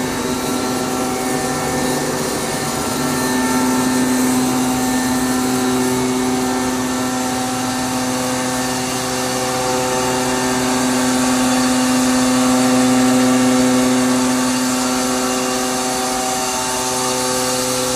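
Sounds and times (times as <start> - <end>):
air compressor humming and hissing: 0.0 - 17.9.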